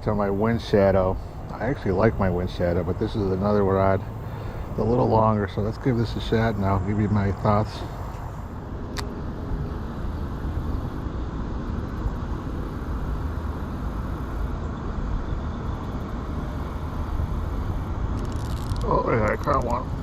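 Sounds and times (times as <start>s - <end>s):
low outdoor rumble: 0.0s - 20.0s
sharp click: 8.9s - 9.2s.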